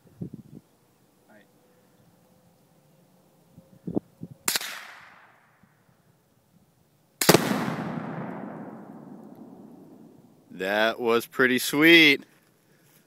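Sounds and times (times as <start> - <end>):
gunshot: 4.5 - 5.3, 7.2 - 9.7
explosive target blast with echo: 7.2 - 10.0.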